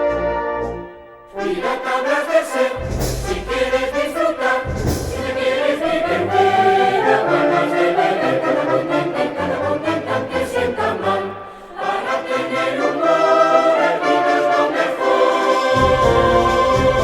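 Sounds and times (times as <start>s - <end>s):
chorus of voices singing: 1.3s - 17.0s
heavy low drum thuds: 2.8s - 6.3s.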